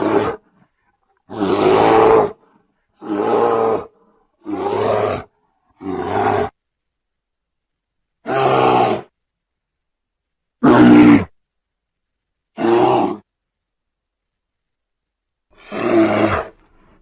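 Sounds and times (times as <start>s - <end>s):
bear roaring: 0.0s - 0.6s, 1.2s - 6.6s, 8.2s - 9.1s, 10.6s - 11.4s, 12.6s - 13.3s, 15.6s - 17.0s.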